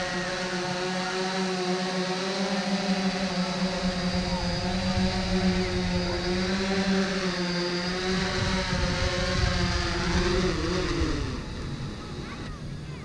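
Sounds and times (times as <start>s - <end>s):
drone propellers whining: 0.0s - 13.0s.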